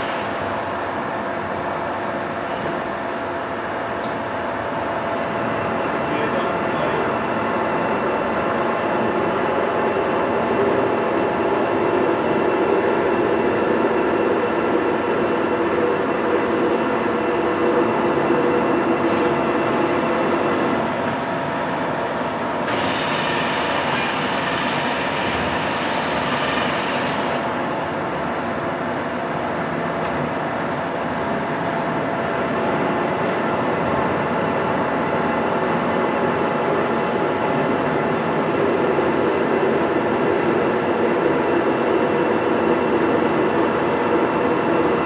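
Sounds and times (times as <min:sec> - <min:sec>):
machine tool humming: 0:22.6 - 0:27.9.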